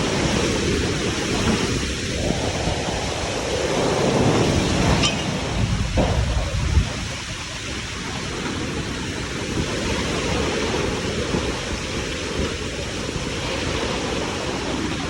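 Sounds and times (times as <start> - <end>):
heavy rain: 0.0 - 15.0
wind: 0.0 - 15.0.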